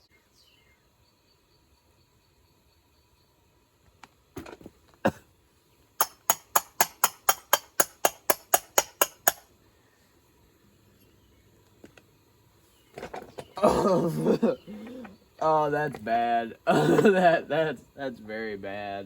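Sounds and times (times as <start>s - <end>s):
sharp clicks: 6.0s - 9.4s.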